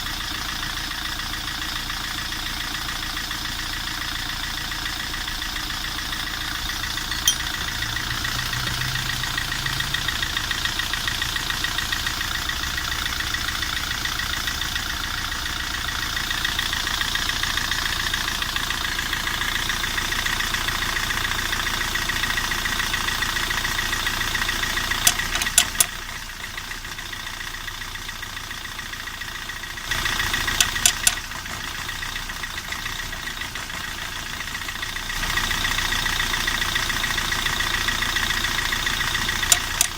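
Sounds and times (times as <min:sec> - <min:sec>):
car engine knocking: 0:00.0 - 0:39.9
sharp clicks: 0:25.1 - 0:25.9, 0:30.6 - 0:31.3, 0:39.4 - 0:39.9.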